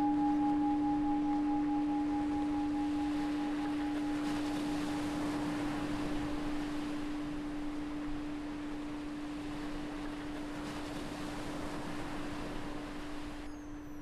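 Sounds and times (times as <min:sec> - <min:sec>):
meditation bell ringing: 0:00.0 - 0:09.1
ocean waves on a beach: 0:00.0 - 0:14.0.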